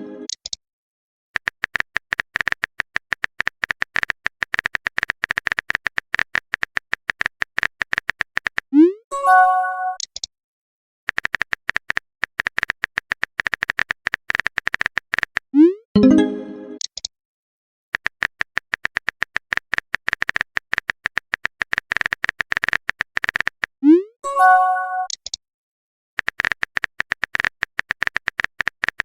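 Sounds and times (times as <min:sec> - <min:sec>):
rapid keyboard typing clicks: 0:01.4 - 0:08.7, 0:11.1 - 0:15.5, 0:18.0 - 0:23.7, 0:26.2 - 0:29.0
notification chime: 0:16.0 - 0:16.8, 0:24.3 - 0:25.1.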